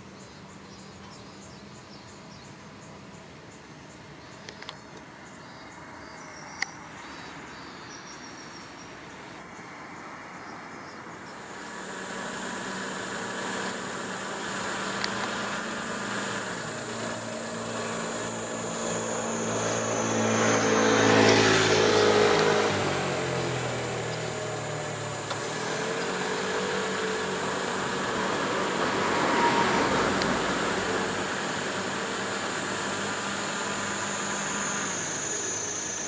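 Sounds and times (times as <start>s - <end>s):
motor vehicle passing: 8.6s - 36.0s.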